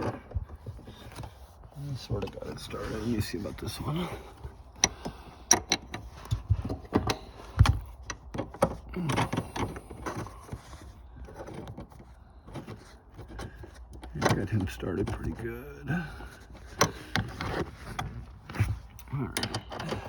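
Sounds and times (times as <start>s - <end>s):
metal bolt clicking and knocking: 4.8s - 10.3s, 19.3s - 20.0s.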